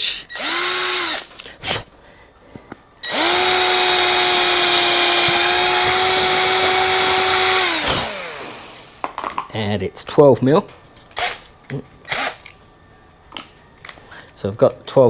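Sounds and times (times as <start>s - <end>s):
electric drill whining: 0.3s - 1.4s, 3.0s - 9.1s, 11.1s - 11.5s.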